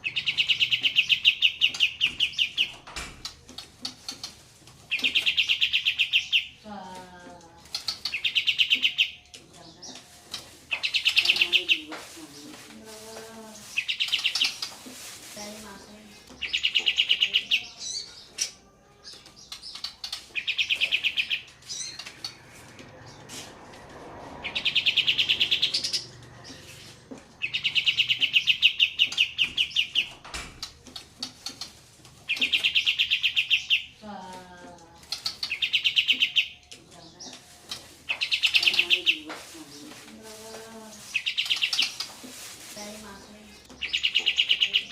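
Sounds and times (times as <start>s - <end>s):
bird singing rolling trill: 0.0s - 2.8s, 4.9s - 9.9s, 15.8s - 23.2s, 24.3s - 30.3s, 32.3s - 42.0s, 42.9s - 44.9s.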